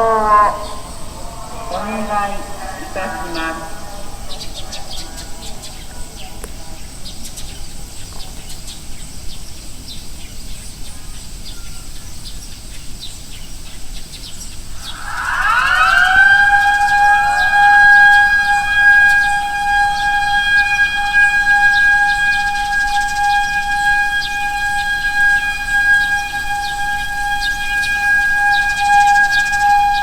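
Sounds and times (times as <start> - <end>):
loudspeaker siren wailing: 0.0 - 6.8, 14.8 - 30.0.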